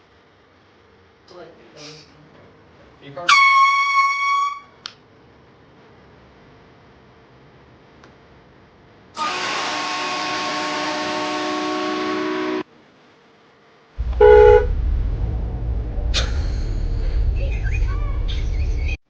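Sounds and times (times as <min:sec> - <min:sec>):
loud honk: 0:03.3 - 0:04.7, 0:09.2 - 0:12.6, 0:14.2 - 0:14.7
low rumble: 0:14.0 - 0:19.0.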